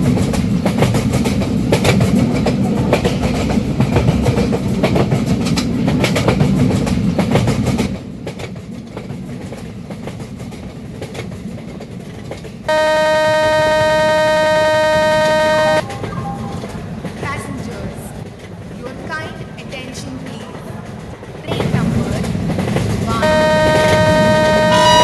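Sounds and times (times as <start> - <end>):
wheels clicking over rail joints: 0.0 - 12.7, 15.8 - 25.0
train rumble: 0.0 - 25.0
train horn blast: 12.7 - 15.9, 23.1 - 25.0.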